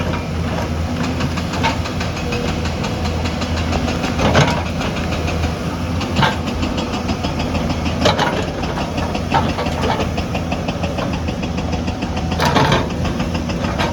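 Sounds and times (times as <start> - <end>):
construction machine engine running: 0.0 - 13.9
metallic clanks: 12.2 - 13.9.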